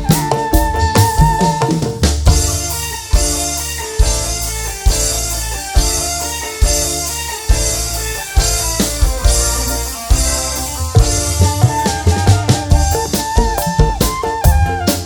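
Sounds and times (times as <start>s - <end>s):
drum beat: 0.0s - 15.0s
guitar melody: 0.0s - 15.0s
heavy bass: 0.0s - 15.0s.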